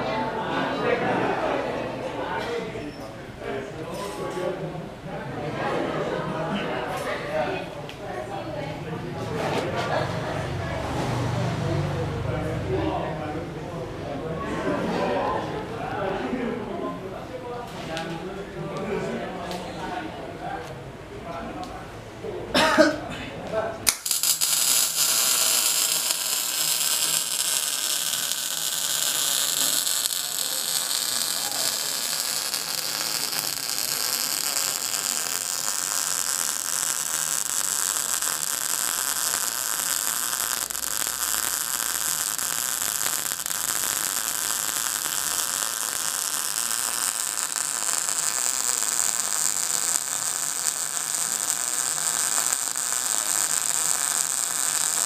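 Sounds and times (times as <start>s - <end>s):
arc welding hiss and crackle: 23.9s - 55.0s.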